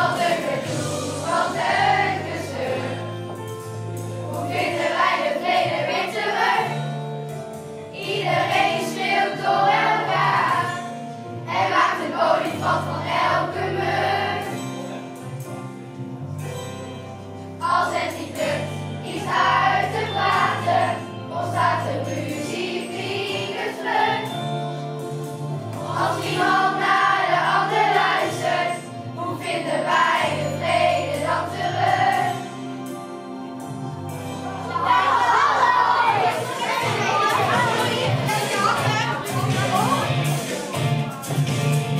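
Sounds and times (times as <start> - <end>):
children singing together: 0.0 - 3.4, 4.2 - 7.0, 8.0 - 14.6, 17.6 - 24.4, 25.7 - 32.6, 33.6 - 40.0
musical accompaniment with bass: 0.0 - 41.9.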